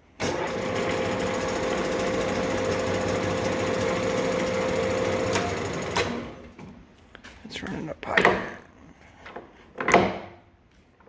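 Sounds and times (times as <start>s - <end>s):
lathe whining and rattling: 0.2s - 6.6s.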